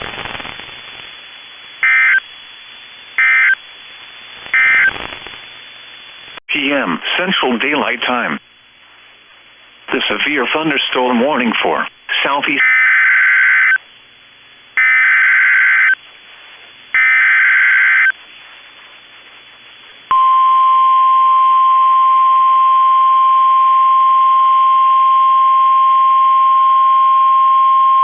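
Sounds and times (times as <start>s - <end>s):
steady warning alarm tone: 1.8s - 2.2s, 3.2s - 3.6s, 4.6s - 4.9s, 12.6s - 13.8s, 14.8s - 16.0s, 17.0s - 18.2s
buzzy warbling data bursts: 4.5s - 5.3s.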